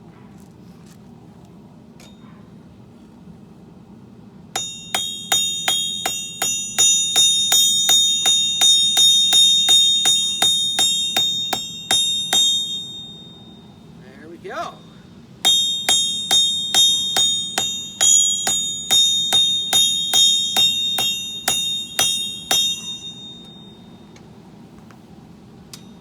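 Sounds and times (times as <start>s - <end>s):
hammer striking steel on anvil: 4.6s - 13.6s, 14.6s - 23.8s.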